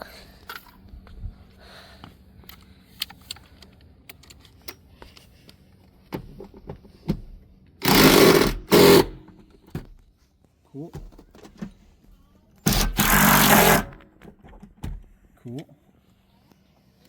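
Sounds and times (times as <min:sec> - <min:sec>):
power drill bursts: 0:07.8 - 0:09.2, 0:12.7 - 0:14.0.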